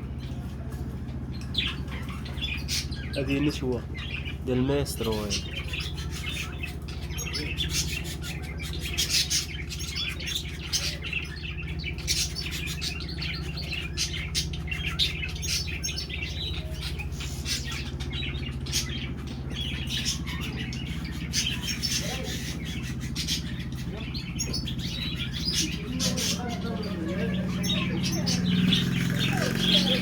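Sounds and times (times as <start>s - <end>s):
cage birds chirping: 0.0s - 30.0s
steady low hum: 0.0s - 30.0s.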